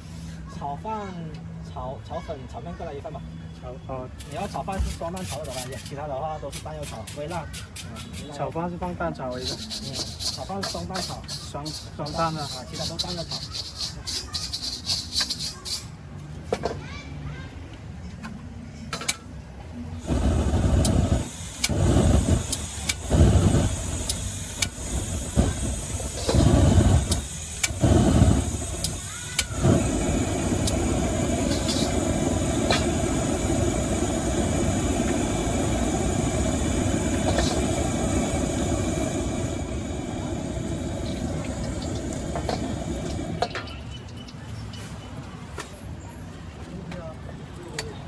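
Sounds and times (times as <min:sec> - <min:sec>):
gas burner roaring: 0:04.2 - 0:15.9, 0:19.9 - 0:43.8.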